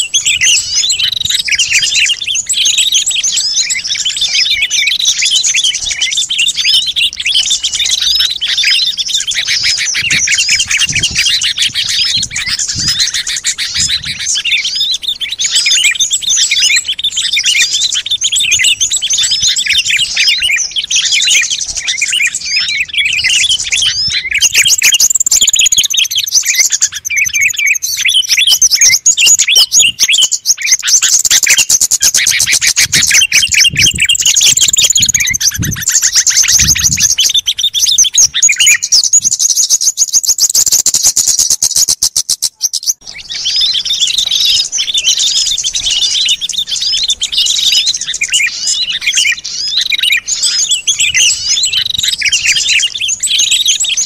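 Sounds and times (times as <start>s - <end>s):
songbirds chirping: 0.0s - 54.0s.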